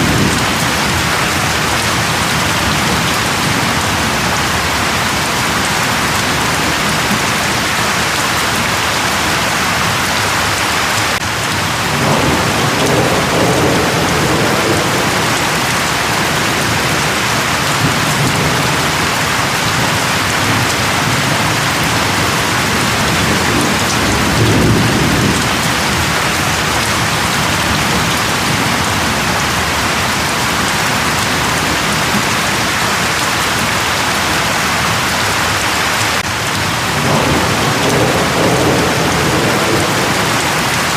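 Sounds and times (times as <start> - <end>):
heavy rain falling: 0.0 - 40.9
distant thunder rumbling: 11.6 - 32.6, 36.5 - 40.9.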